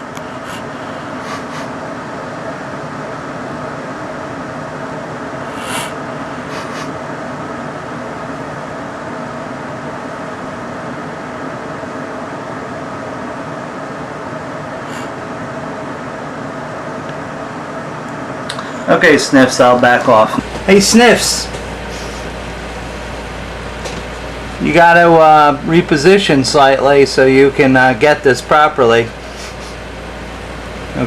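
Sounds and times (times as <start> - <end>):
air-handling machinery hum: 0.0 - 31.0
short hiss: 5.4 - 7.0.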